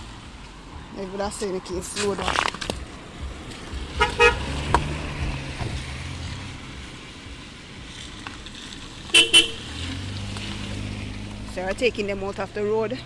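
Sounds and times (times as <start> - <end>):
passing vehicle engine hum: 0.0 - 13.0
car horn toots: 4.0 - 5.0, 9.1 - 9.8.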